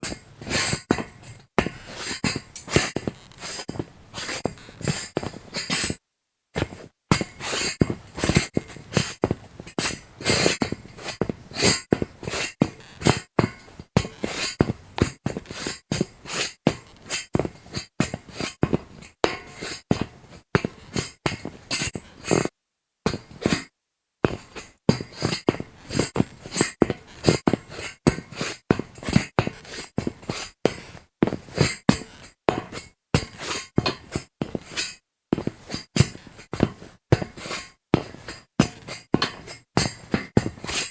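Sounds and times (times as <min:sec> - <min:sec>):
footsteps on metal grate: 0:00.0 - 0:06.0, 0:06.6 - 0:10.1, 0:16.7 - 0:22.5, 0:24.3 - 0:40.8.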